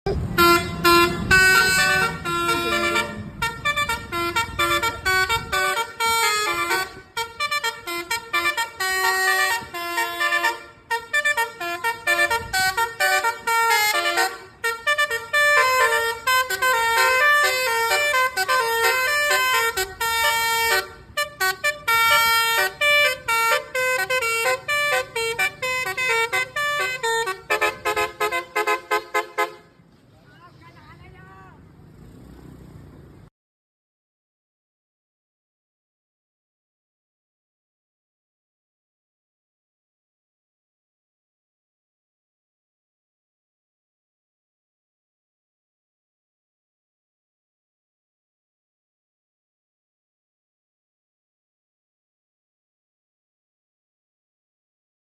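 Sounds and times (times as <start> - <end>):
musical bus horn playing a tune: 0.1 - 29.8.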